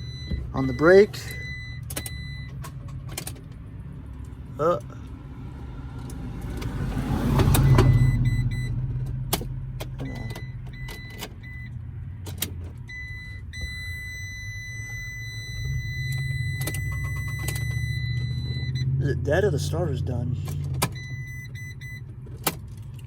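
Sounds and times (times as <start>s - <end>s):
dashboard warning beep: 0.0s - 2.8s, 7.4s - 8.9s, 9.9s - 11.8s, 12.8s - 19.8s, 20.4s - 22.1s
low hum: 3.4s - 9.6s.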